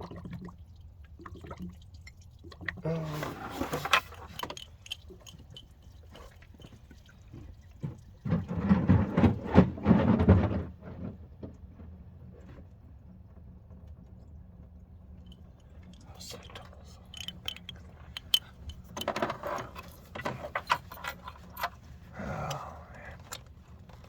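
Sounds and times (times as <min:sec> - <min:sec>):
coolant dripping into a pan: 0:00.0 - 0:03.0, 0:04.0 - 0:09.3
splashing and knocking: 0:06.2 - 0:10.6.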